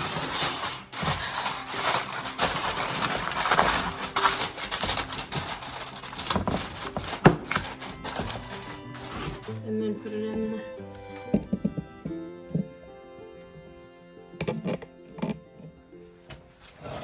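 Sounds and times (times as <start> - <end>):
wrapping crinkling and rustling: 0.0 - 9.7, 14.5 - 17.0.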